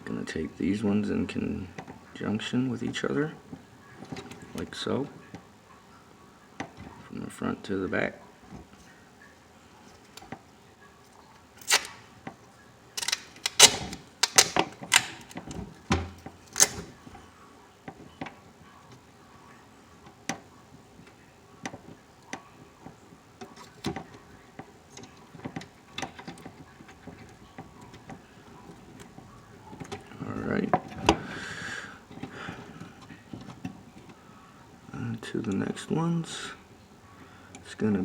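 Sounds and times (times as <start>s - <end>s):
wire connectors clicking and knocking: 11.6s - 12.4s, 13.0s - 17.2s, 20.0s - 31.4s, 32.0s - 34.2s.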